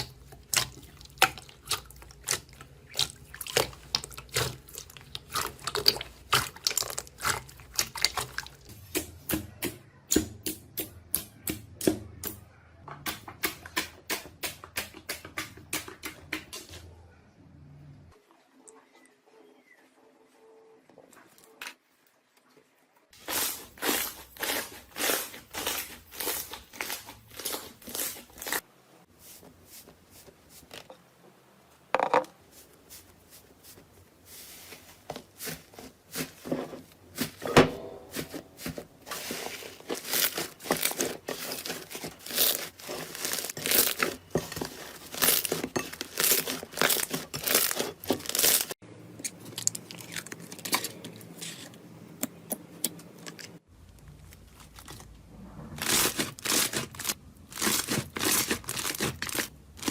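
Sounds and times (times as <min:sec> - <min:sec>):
slime squelching by hand: 0:00.0 - 0:08.7, 0:38.0 - 0:51.8.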